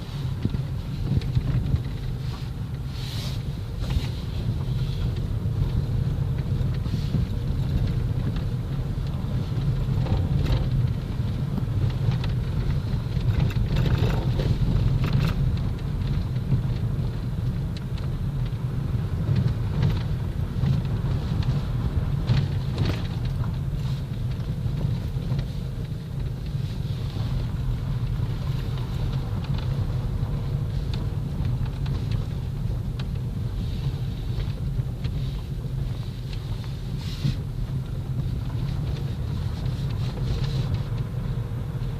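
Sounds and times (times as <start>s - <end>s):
road and wind noise: 0.0s - 41.9s
light knocks and rattles: 3.8s - 18.5s.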